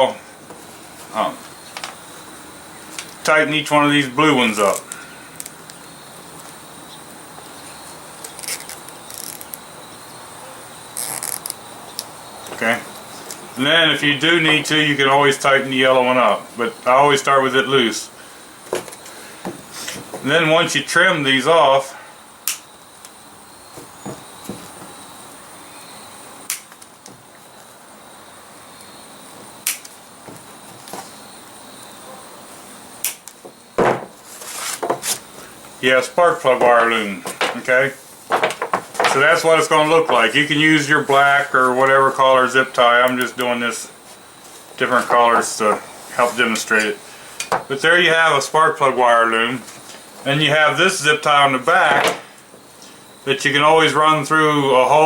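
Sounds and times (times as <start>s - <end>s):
cutters snipping zip ties: 8.2s - 9.6s
plastic ties rustling: 8.2s - 9.6s, 11.0s - 11.6s.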